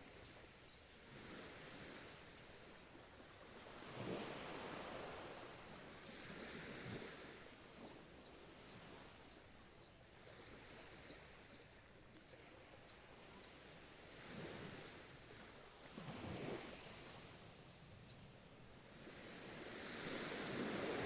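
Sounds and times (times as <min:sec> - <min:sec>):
ocean waves washing ashore: 0:00.0 - 0:21.0.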